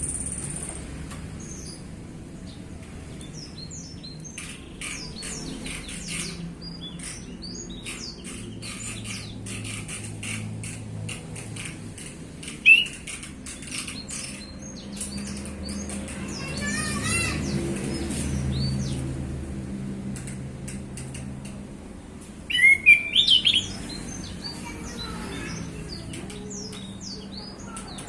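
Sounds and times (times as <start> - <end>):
thrush singing chirps: 12.5 - 15.3, 22.5 - 27.3.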